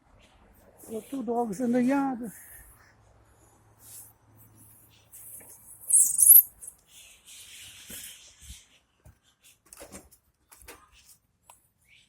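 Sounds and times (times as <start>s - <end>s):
small birds chirping: 4.9s - 7.8s.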